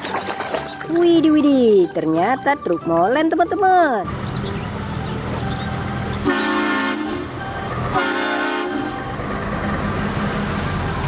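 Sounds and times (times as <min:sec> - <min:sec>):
low engine rumble: 0:00.8 - 0:11.0
multi-tone air horn blasts: 0:06.2 - 0:09.0.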